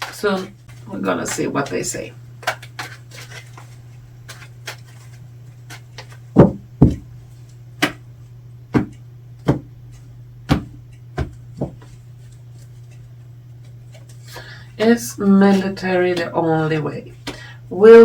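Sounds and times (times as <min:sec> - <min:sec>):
steady low hum: 0:00.0 - 0:18.0
cards knocking on tabletop: 0:06.0 - 0:07.1, 0:08.7 - 0:09.7, 0:10.5 - 0:11.9.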